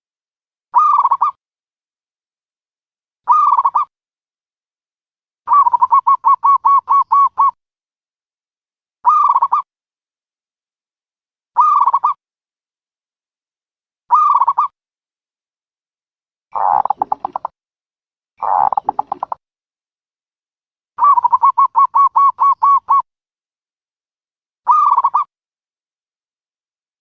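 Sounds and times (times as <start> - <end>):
recorded dove calls: 0.8 - 1.4, 3.3 - 3.9, 5.5 - 7.6, 9.0 - 9.6, 11.6 - 12.2, 14.1 - 14.7, 16.5 - 17.5, 18.4 - 19.4, 21.0 - 23.1, 24.7 - 25.3.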